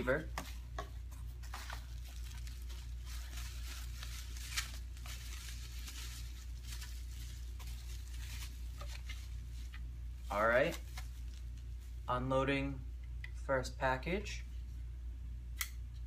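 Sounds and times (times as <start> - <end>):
steady low hum: 0.0 - 16.0
packaging rustling and crinkling: 0.5 - 11.9.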